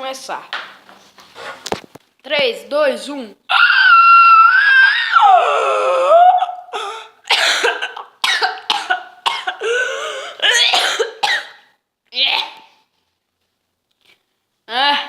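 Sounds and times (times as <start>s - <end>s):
person squealing from the throat: 3.5s - 7.1s
person coughing: 7.3s - 11.7s.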